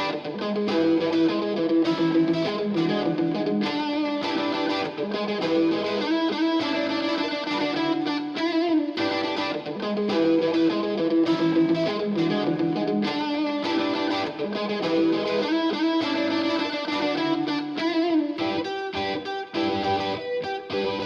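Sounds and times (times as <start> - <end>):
distorted electric guitar: 0.0 - 21.0.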